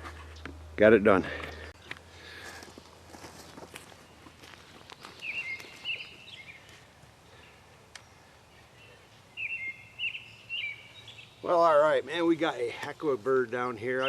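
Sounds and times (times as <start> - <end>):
rustling: 2.3 - 7.0
songbird warbling: 5.2 - 6.7, 7.4 - 11.7.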